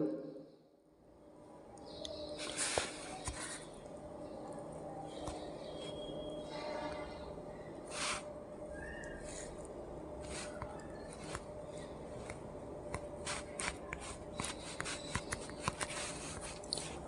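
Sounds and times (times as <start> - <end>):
fingers tapping smartphone: 9.0 - 17.0.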